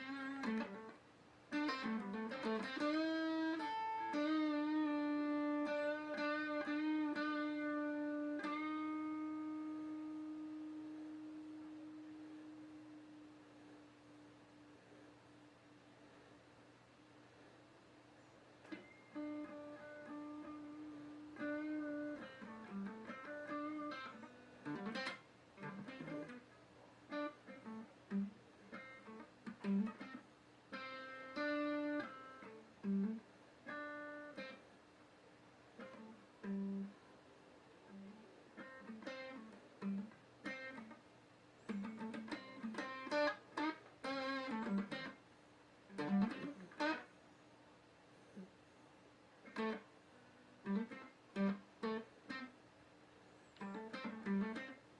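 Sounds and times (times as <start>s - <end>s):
guitar played slowly: 0.0s - 14.7s, 18.6s - 26.5s, 27.1s - 34.7s, 35.8s - 37.0s, 37.9s - 41.0s, 41.6s - 45.2s, 45.9s - 47.1s, 49.4s - 52.6s, 53.6s - 54.9s.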